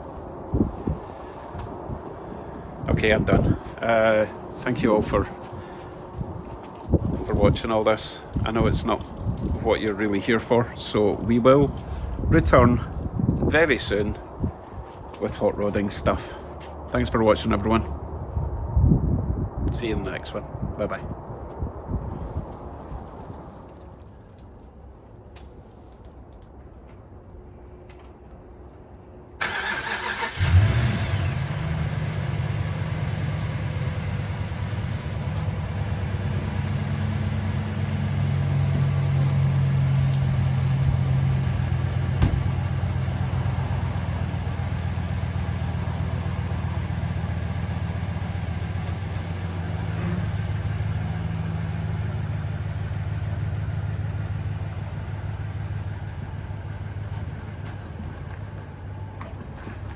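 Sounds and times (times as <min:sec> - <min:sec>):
pickup truck engine running: 0:29.4 - 0:59.2.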